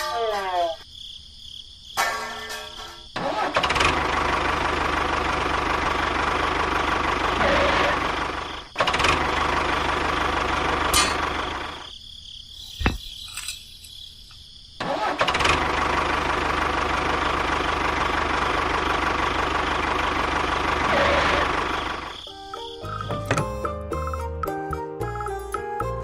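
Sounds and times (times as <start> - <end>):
small engine running: 3.2 - 11.8, 15.0 - 22.2.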